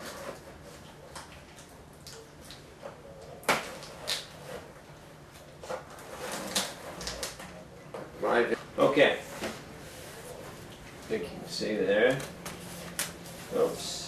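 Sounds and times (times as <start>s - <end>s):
cardboard scraping and rustling: 5.6s - 7.2s.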